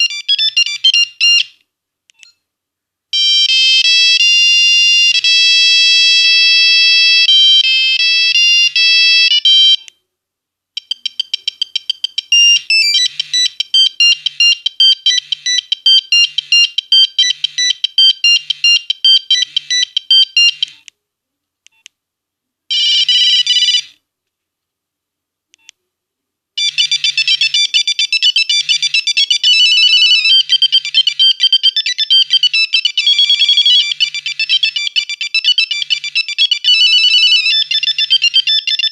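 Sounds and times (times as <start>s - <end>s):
mobile phone monophonic ringtones: 0.0s - 1.5s, 3.2s - 9.8s, 10.8s - 20.7s, 22.7s - 23.9s, 26.6s - 38.9s.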